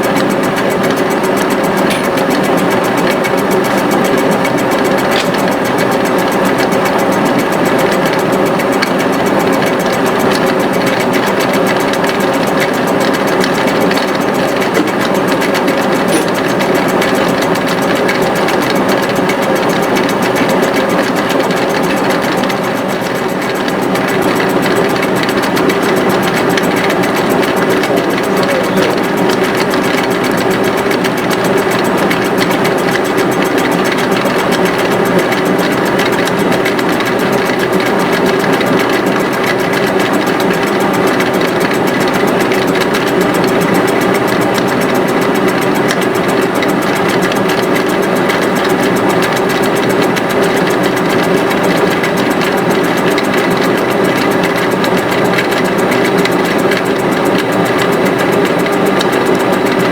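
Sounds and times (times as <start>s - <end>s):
fast fine rattle: 0.0s - 59.9s
machine motor running: 0.0s - 59.9s.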